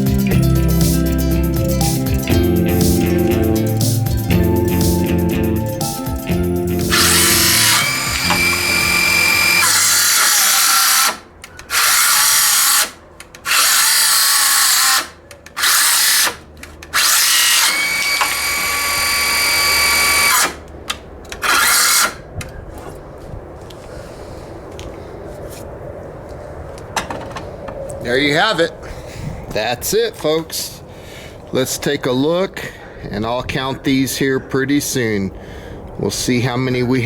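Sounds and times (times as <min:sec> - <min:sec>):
circular saw cutting wood: 0:06.8 - 0:20.6, 0:21.4 - 0:22.2.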